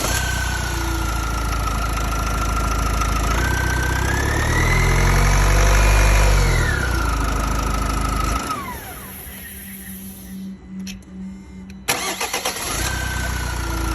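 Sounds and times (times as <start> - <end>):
diesel engine revving: 0.0 - 10.2, 11.9 - 13.9
high engine whine: 0.0 - 13.9.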